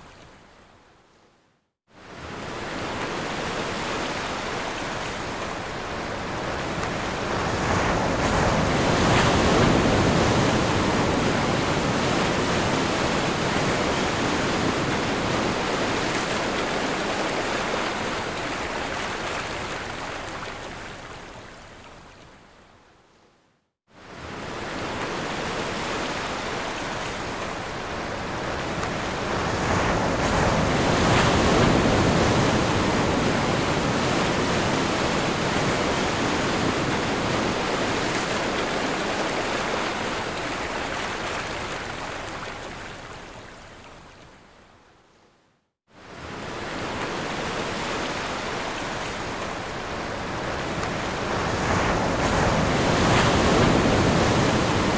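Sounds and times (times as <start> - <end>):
ocean surf rushing: 24.5 - 42.4, 46.1 - 54.9.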